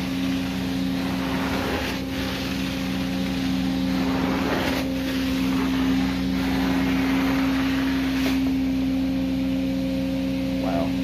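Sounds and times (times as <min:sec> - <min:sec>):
vacuum motor hum: 0:00.0 - 0:11.0
rushing hiss of cleaning wand: 0:00.3 - 0:08.6.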